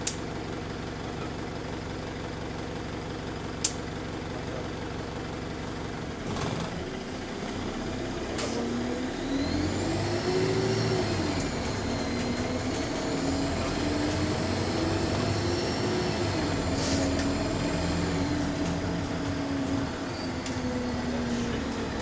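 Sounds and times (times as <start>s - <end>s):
bus engine accelerating: 1.2s - 22.0s
high turbo whine: 8.7s - 22.0s.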